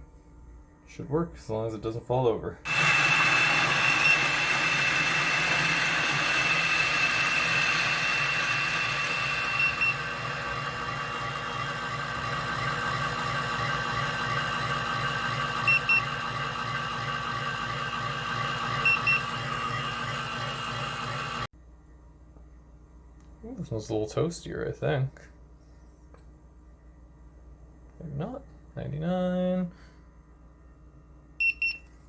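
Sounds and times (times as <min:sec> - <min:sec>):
electric coffee grinder running: 0:02.7 - 0:21.5.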